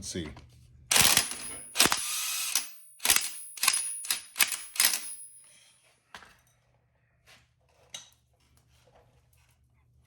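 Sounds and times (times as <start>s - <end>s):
impact wrench bursts: 0.9s - 5.4s.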